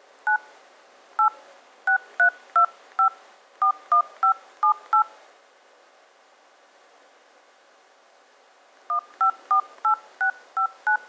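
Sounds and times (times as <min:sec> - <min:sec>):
faint hiss: 0:00.0 - 0:11.0
phone keypad beeps: 0:01.2 - 0:05.1, 0:08.9 - 0:11.0.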